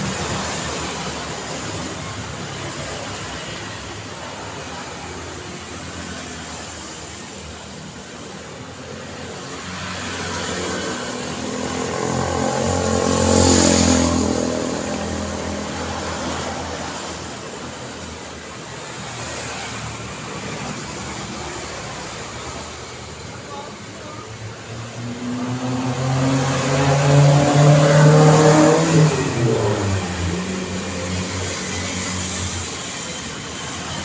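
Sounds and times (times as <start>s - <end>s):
road traffic: 0.0s - 34.0s
vehicle passing close by: 9.6s - 22.8s, 24.5s - 33.8s.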